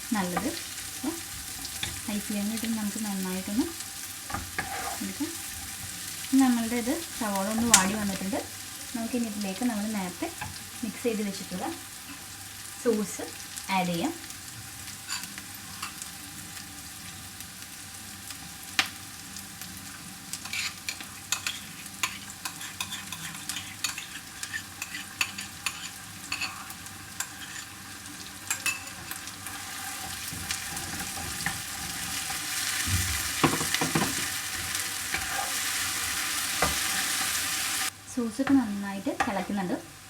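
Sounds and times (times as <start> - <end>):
sauce sizzling in a pan: 0.0 - 40.0
spoon stirring against a pan: 0.2 - 10.8, 14.9 - 16.2, 19.8 - 39.7.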